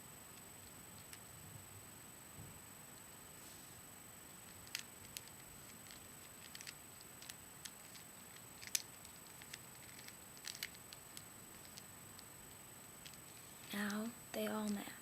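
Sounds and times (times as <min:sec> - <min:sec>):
puzzle cube plastic clicks: 0:04.4 - 0:12.3.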